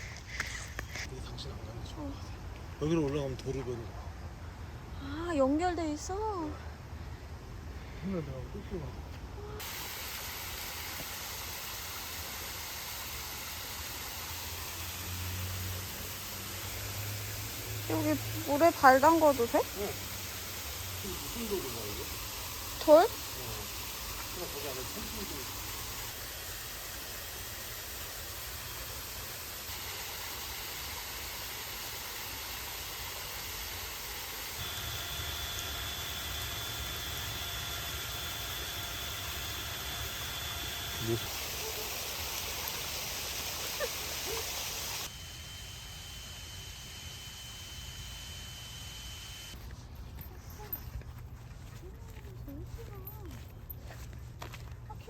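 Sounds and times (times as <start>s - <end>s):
thin high tone: 11.4s - 49.6s
flowing water rushing: 41.2s - 45.1s.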